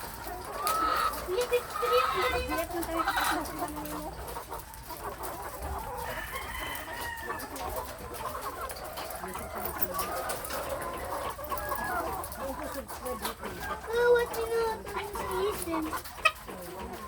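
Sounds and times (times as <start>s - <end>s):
chickens clucking: 0.0s - 17.0s
rooster crowing: 6.1s - 7.5s.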